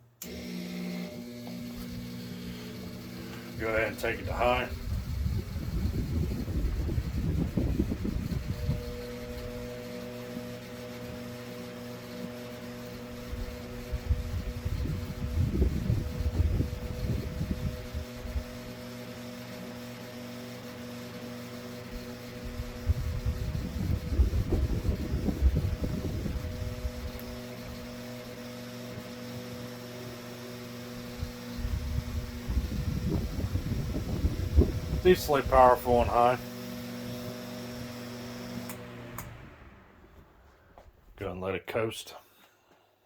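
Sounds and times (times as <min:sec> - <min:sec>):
table fan motor humming: 0:00.2 - 0:40.4
low unsteady rumble: 0:03.6 - 0:09.5, 0:22.4 - 0:27.8, 0:31.2 - 0:36.2.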